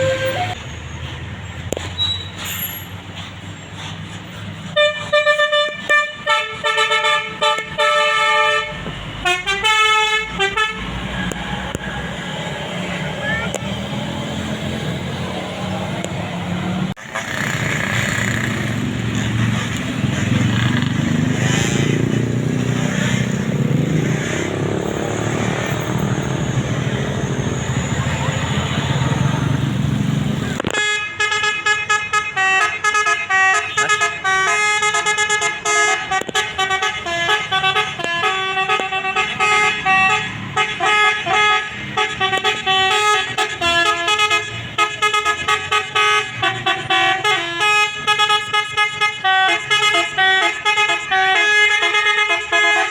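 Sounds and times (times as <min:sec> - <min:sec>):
musical bus air horn melody: 0:00.0 - 0:00.6, 0:04.7 - 0:11.8, 0:30.7 - 0:52.9
bus engines passing: 0:00.0 - 0:52.9
street noise: 0:00.0 - 0:52.9
voices: 0:11.1 - 0:13.8.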